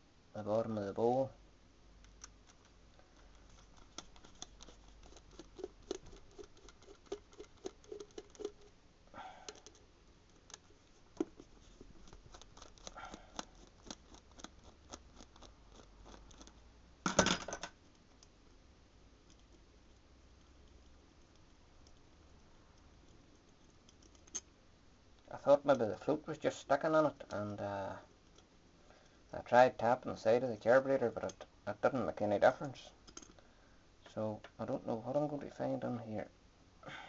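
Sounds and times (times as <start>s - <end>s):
screwdriver clicking and scraping: 2.1s - 8.8s, 9.5s - 16.6s.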